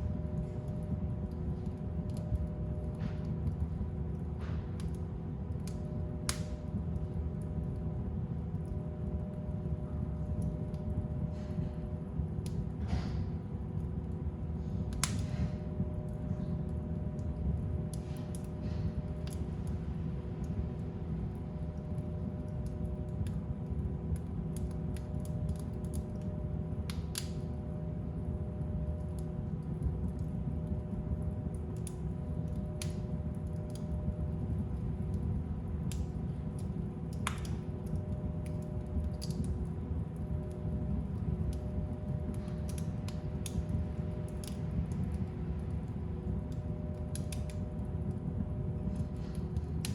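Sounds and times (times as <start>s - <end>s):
faint steady hum: 0.0s - 49.9s
fire crackling and popping: 0.0s - 49.9s.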